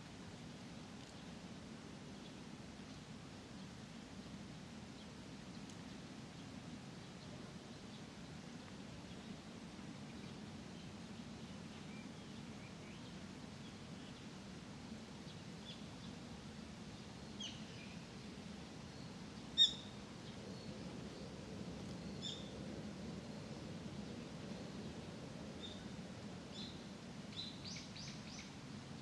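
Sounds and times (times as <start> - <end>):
small birds chirping: 18.8 - 22.6, 26.5 - 28.6.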